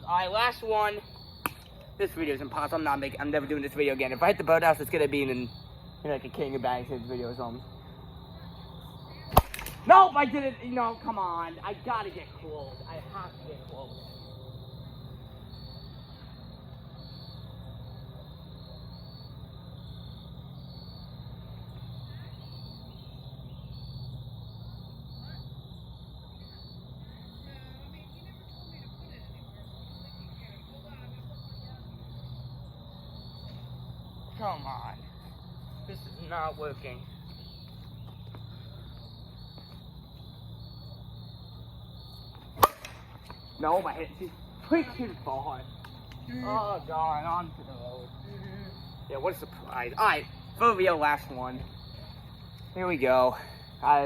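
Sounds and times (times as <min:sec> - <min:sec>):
crickets chirping: 0:00.0 - 0:54.0
insects trilling: 0:00.0 - 0:54.0
baseball bat hitting ball: 0:01.4 - 0:01.8, 0:09.3 - 0:09.9, 0:42.5 - 0:43.5.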